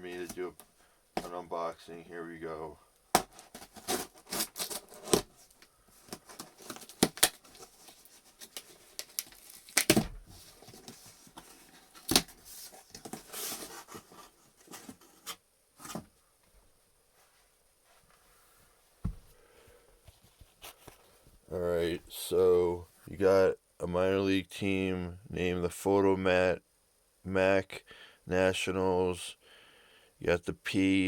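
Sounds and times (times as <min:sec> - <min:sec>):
packaging tearing and crinkling: 0:03.2 - 0:05.3, 0:06.0 - 0:12.4
sharp snaps and crackles: 0:06.6 - 0:10.1.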